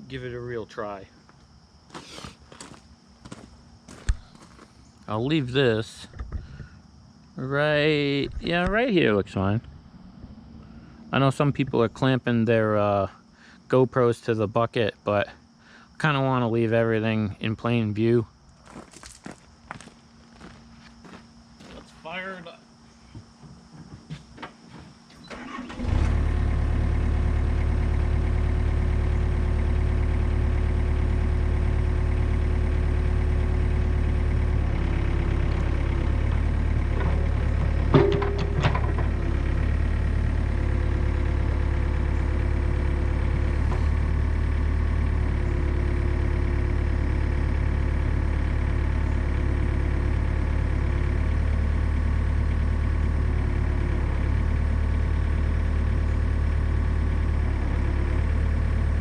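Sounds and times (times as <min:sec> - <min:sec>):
diesel engine starting and idling: 0:02.0 - 0:13.9, 0:25.0 - 0:59.0.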